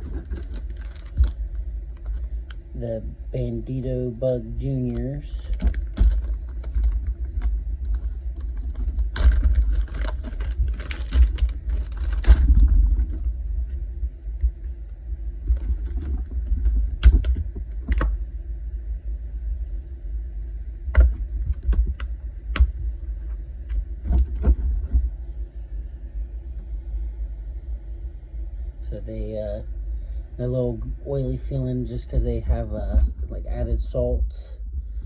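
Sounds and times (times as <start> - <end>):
plastic packaging crinkling: 0.0 - 2.6, 4.9 - 13.3
steady low rumble: 0.0 - 35.0.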